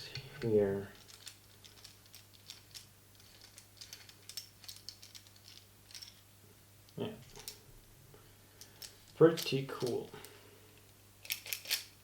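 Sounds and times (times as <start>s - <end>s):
small metal parts clicking: 1.0s - 6.2s, 8.6s - 10.1s, 11.2s - 12.0s.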